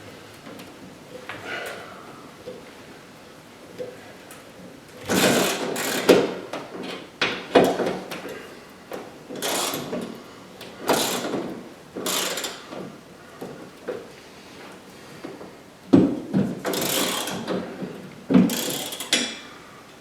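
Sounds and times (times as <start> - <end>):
socket ratchet wrench ratcheting: 5.1 - 6.2, 9.4 - 9.9, 10.9 - 11.3, 12.1 - 12.6, 16.7 - 17.5, 18.5 - 19.3.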